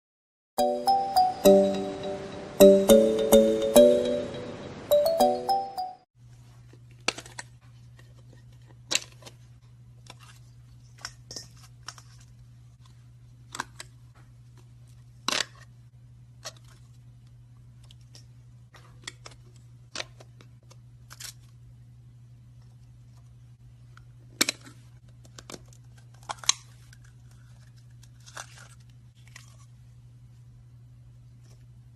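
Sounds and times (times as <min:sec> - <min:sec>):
intro music: 0:00.6 - 0:06.1.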